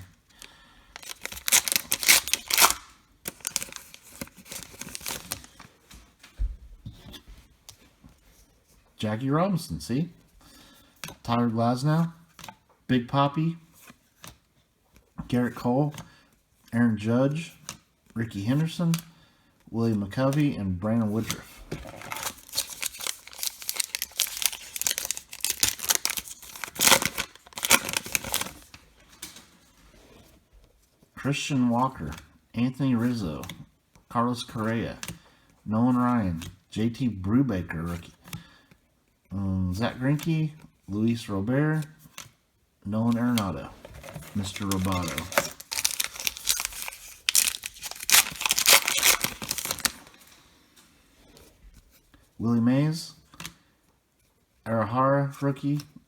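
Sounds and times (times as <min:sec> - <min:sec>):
wrapper crinkling: 0:00.0 - 0:05.7, 0:21.8 - 0:29.5, 0:43.8 - 0:50.3
wrapper tearing: 0:00.4 - 0:05.7, 0:21.8 - 0:28.7, 0:43.8 - 0:50.2.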